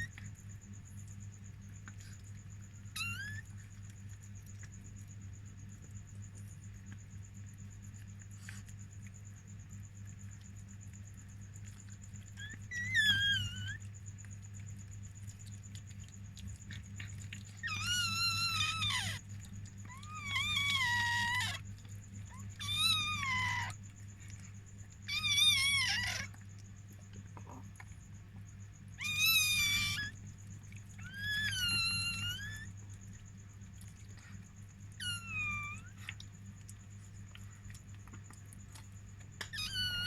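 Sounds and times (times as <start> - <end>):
steady low hum: 0.0 - 40.0
puppy squealing: 2.9 - 3.6, 12.4 - 13.8, 17.6 - 19.2, 19.8 - 21.6, 22.3 - 23.8, 25.0 - 26.4, 29.0 - 30.2, 30.9 - 32.7, 35.0 - 36.1, 39.4 - 40.0.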